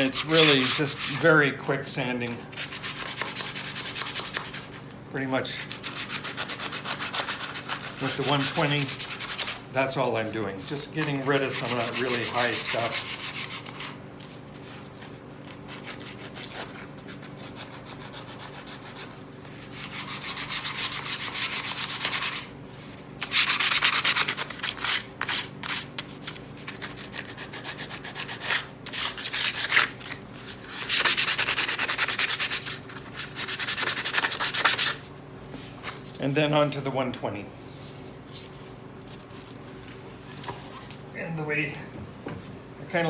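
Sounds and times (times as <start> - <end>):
sandpaper rubbing on wood: 0.0 - 1.2, 2.5 - 4.7, 5.8 - 9.6, 11.2 - 14.0, 19.7 - 22.5, 23.2 - 25.8, 30.7 - 35.0.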